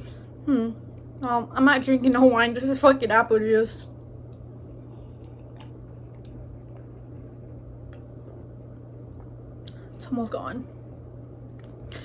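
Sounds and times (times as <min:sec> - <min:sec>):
low electrical hum: 0:00.0 - 0:12.0
soft swallowing clicks: 0:04.3 - 0:10.0
wet mouth sounds sipping: 0:04.8 - 0:07.3.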